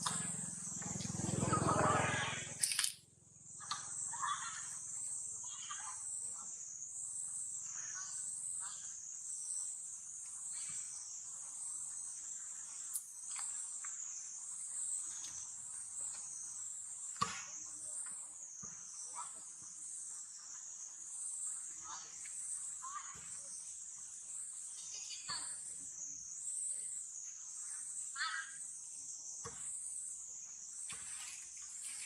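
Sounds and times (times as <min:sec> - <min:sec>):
high-pitched insect chorus: 0:00.0 - 0:32.0
sharp click: 0:02.6 - 0:03.0.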